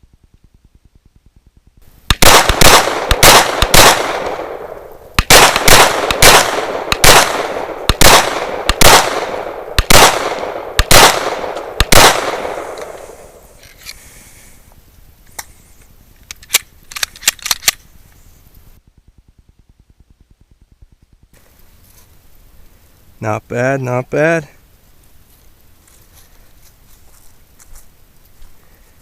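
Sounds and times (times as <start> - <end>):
pistol shots: 2.1 - 13.4.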